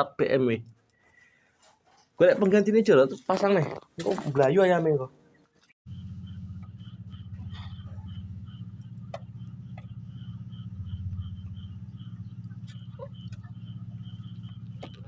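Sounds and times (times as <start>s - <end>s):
high regular chirp: 5.9s - 15.0s
low engine hum: 5.9s - 15.0s.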